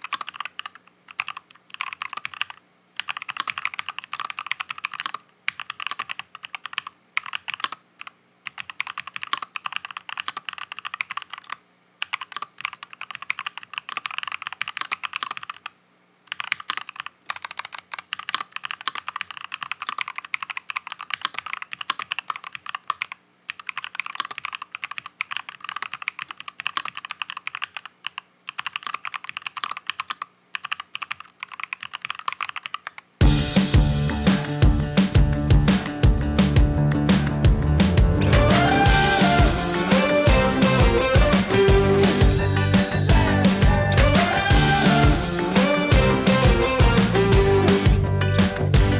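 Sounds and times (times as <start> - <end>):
mechanical keyboard typing: 0.0 - 33.1
loud music: 33.2 - 48.9.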